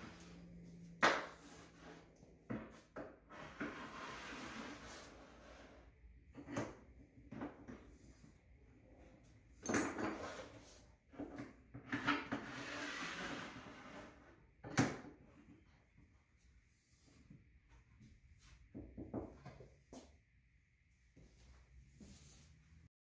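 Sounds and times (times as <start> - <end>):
rubbing or sliding: 3.3 - 6.0, 12.4 - 14.3.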